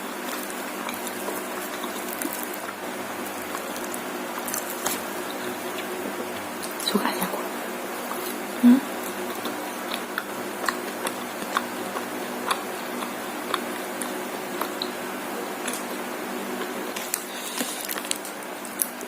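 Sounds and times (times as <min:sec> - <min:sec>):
wet chewing and mouth clicks: 0:00.2 - 0:07.2, 0:08.0 - 0:15.0.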